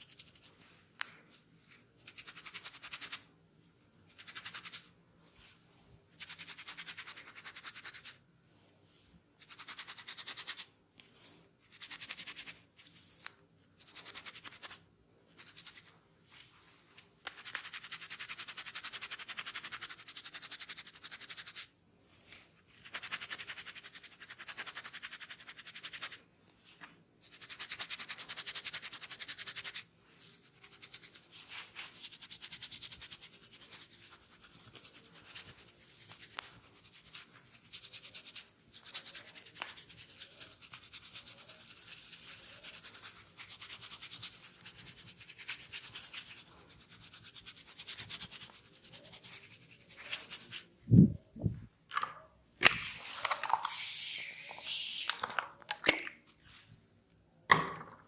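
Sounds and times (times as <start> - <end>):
fingers scratching scalp through hair: 27.3 - 50.7.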